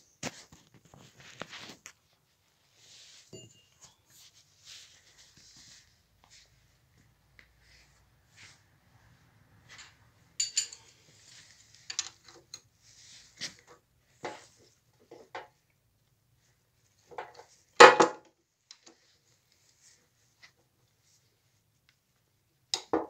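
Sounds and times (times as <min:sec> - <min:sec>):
metal tools clinking and knocking: 0:03.3 - 0:03.8, 0:09.8 - 0:11.2, 0:11.8 - 0:12.6.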